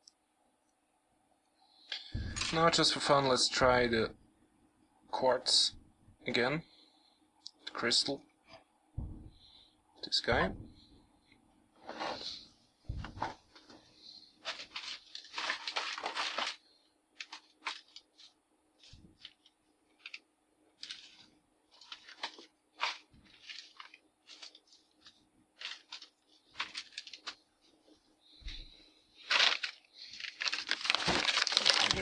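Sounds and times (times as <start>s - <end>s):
faint steady hum: 0.0s - 32.0s
small parts and tools handled: 14.4s - 16.6s, 17.2s - 20.2s, 20.8s - 32.0s.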